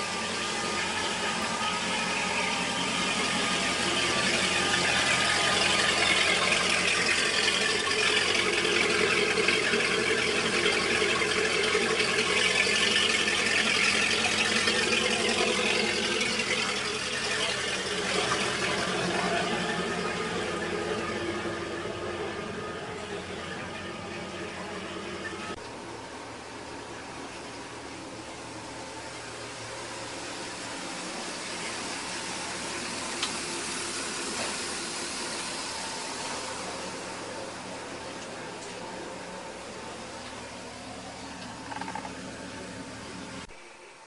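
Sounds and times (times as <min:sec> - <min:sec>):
boat engine running: 0:00.0 - 0:44.0.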